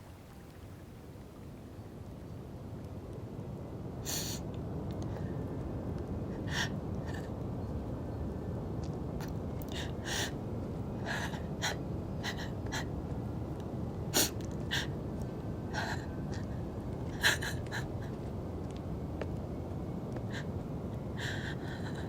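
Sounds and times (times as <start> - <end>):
low background rumble: 0.0 - 22.0
person gasping breaths: 21.2 - 22.0.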